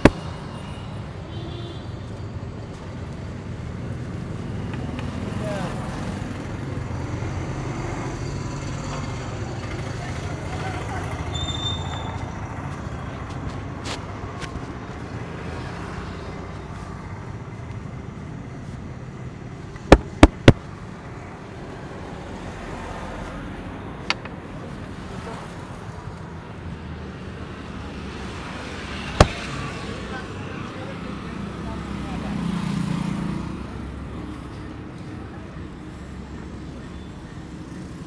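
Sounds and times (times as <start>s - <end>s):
street traffic noise: 0.0s - 38.0s
hand strikes of head massage: 19.9s - 20.6s.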